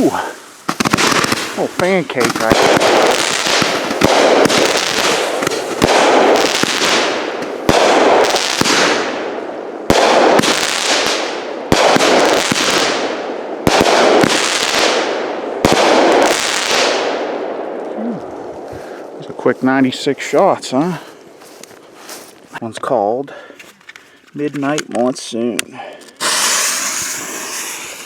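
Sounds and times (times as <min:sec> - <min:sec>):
firework bangs with crackling tails: 0:00.0 - 0:17.8, 0:26.2 - 0:28.0.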